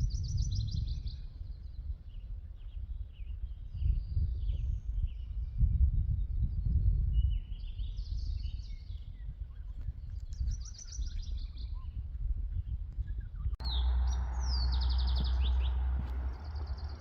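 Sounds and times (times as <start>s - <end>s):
songbirds chirping and trilling: 0.0s - 17.0s
wind rumble on microphone: 0.0s - 17.0s.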